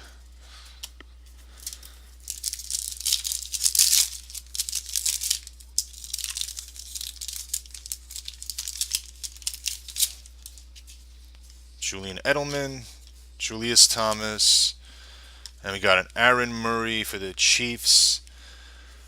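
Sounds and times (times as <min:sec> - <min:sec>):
card pack wrapper tearing and crinkling: 0:01.6 - 0:10.9
cards being handled: 0:01.6 - 0:11.6.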